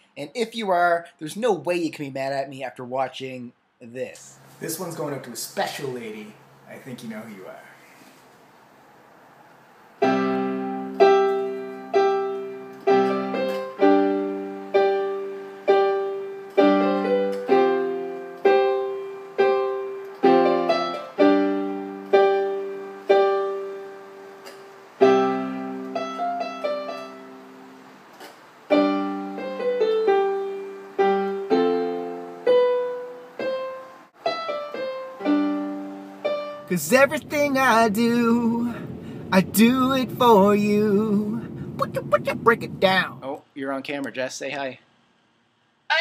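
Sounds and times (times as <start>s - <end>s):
slow solo piano: 10.0s - 28.0s, 28.7s - 40.2s.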